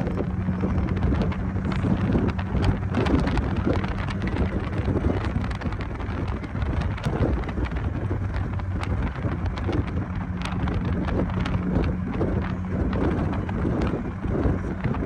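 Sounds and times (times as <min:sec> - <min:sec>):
car engine and road rumble: 0:00.0 - 0:15.0
car rattles and knocks: 0:00.0 - 0:15.0.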